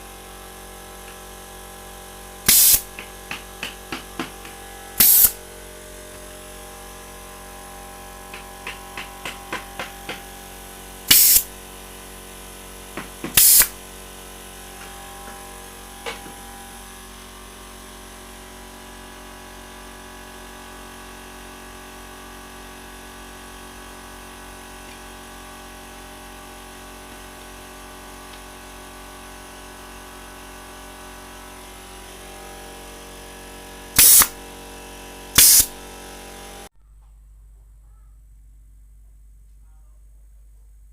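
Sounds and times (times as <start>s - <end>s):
nail gun firing with air hiss: 2.4s - 5.4s, 11.0s - 11.6s, 12.9s - 13.8s, 33.9s - 34.4s, 35.4s - 35.8s
faint steady hum: 36.8s - 40.9s.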